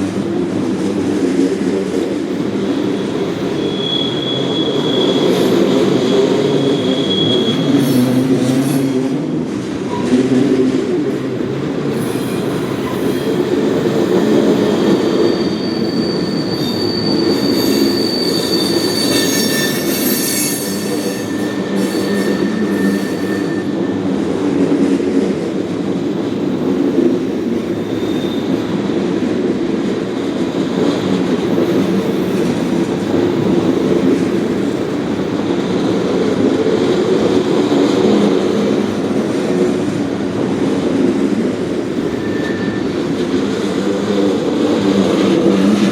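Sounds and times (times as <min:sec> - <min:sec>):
train wheels rumbling on rail: 0:00.0 - 0:45.9
high wheel squeal: 0:02.8 - 0:09.0, 0:12.0 - 0:24.1, 0:27.4 - 0:28.8, 0:41.9 - 0:43.2.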